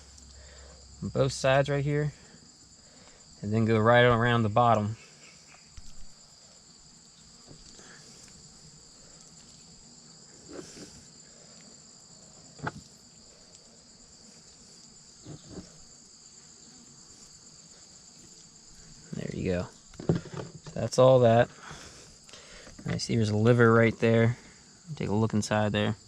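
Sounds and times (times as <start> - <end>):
insects trilling: 0.0 - 26.0
faint handling sounds: 5.5 - 20.9.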